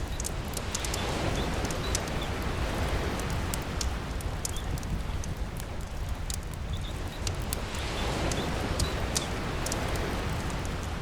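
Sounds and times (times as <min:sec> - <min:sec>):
rain rushing: 0:00.0 - 0:11.0
wood fire crackling: 0:00.0 - 0:11.0
sea waves rumbling: 0:07.5 - 0:11.0.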